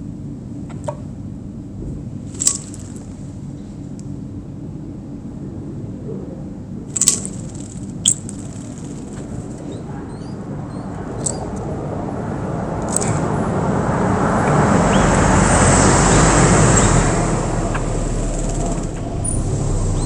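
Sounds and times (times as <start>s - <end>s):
vehicle passing: 7.0s - 20.0s
faint bird chirps: 7.4s - 11.5s.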